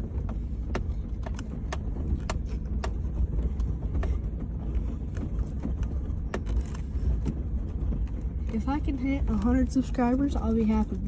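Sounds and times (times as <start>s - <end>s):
sharp clicks and rattles: 0.0s - 11.0s
vehicle engine and road rumble: 0.0s - 11.0s.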